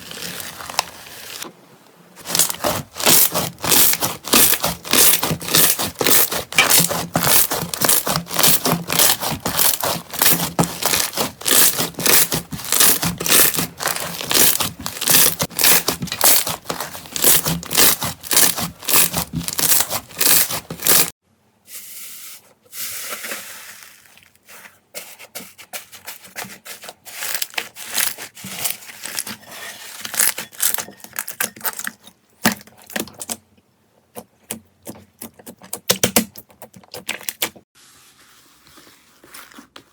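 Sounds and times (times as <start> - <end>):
slime crackling and squishing: 2.2 - 21.2, 26.6 - 33.4.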